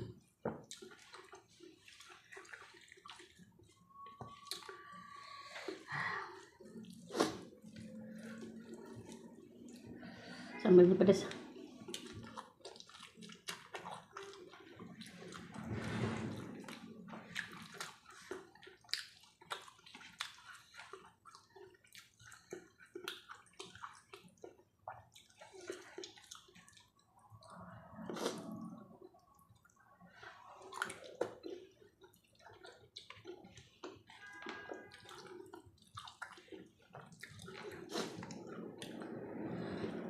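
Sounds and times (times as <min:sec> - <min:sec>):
wet chewing sounds: 0:00.0 - 0:10.6, 0:11.2 - 0:15.7, 0:16.5 - 0:40.0.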